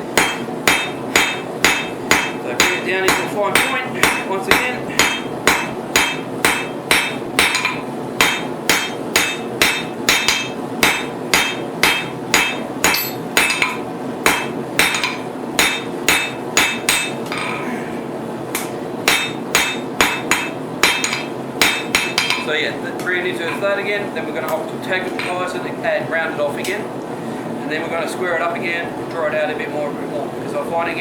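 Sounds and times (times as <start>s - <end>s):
hammer striking steel on anvil: 0.1s - 17.5s, 18.5s - 22.5s, 25.1s - 25.5s.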